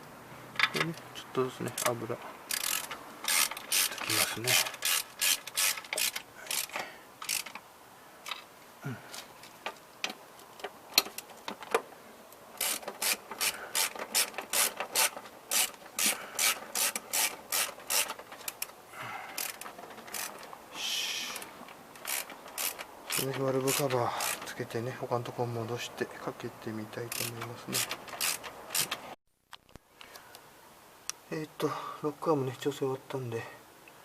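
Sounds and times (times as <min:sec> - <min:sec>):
ratchet wrench clicking: 0:02.5 - 0:07.6, 0:12.6 - 0:18.6, 0:19.4 - 0:20.4, 0:21.3 - 0:24.5, 0:27.1 - 0:29.0.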